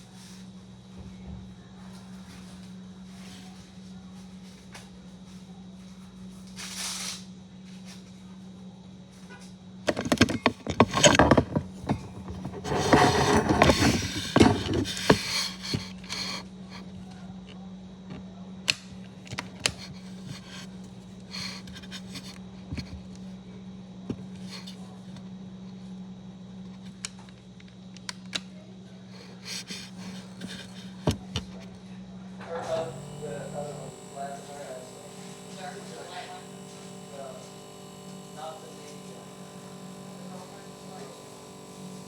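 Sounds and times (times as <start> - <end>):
motor hum: 9.8 - 17.2, 17.8 - 25.4, 28.8 - 42.0
rustling and scraping handling noise: 9.9 - 17.1, 19.3 - 23.2, 29.1 - 31.8.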